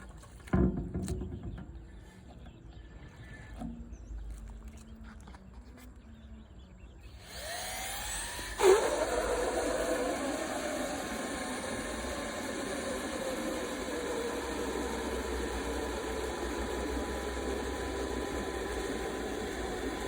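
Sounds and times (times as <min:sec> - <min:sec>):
cordless vacuum cleaner running: 0:07.2 - 0:20.0.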